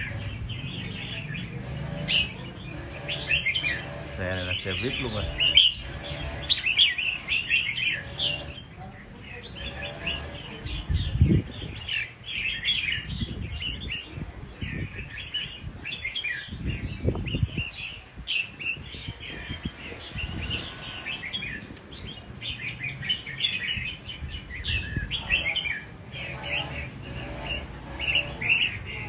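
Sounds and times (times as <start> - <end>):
bird chirping and twittering: 0.0 - 29.0.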